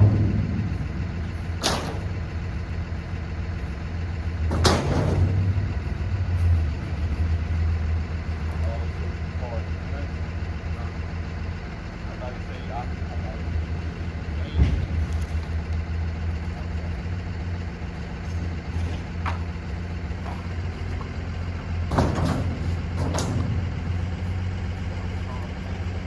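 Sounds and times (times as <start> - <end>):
knocks and clatters: 0.0 - 2.2, 4.4 - 5.7, 18.2 - 24.2
vehicle engine idling: 0.0 - 26.0.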